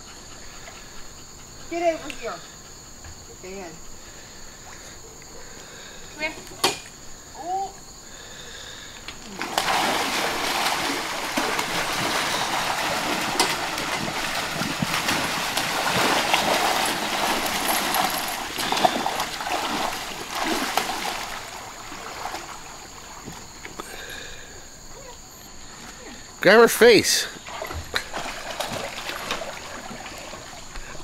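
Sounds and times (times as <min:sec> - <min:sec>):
dog splashing in water: 0:09.3 - 0:23.7, 0:27.4 - 0:30.7.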